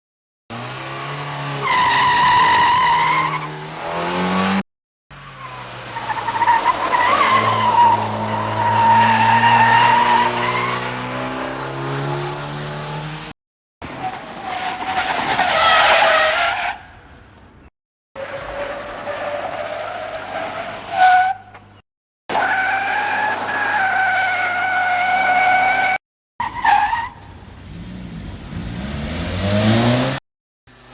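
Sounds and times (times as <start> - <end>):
tyre screech braking: 1.5 - 3.6, 5.2 - 11.0, 13.9 - 17.2, 18.2 - 27.4
car engine revving: 3.3 - 13.3, 27.2 - 30.9
tyres squealing: 18.2 - 27.2.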